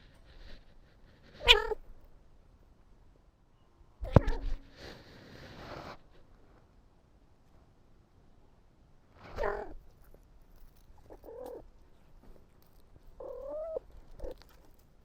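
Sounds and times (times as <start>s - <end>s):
cat meowing: 1.4s - 1.8s.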